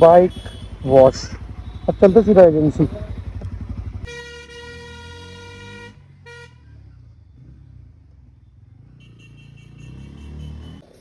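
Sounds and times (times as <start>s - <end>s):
low engine rumble: 0.0s - 4.1s
vehicle horn honking: 0.0s - 6.7s, 8.8s - 10.8s.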